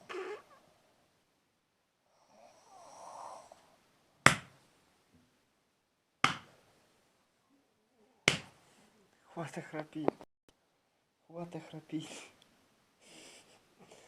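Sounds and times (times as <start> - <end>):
person snoring: 2.2 - 3.8
sharp smacks: 4.2 - 4.6, 6.2 - 6.6, 8.2 - 8.6.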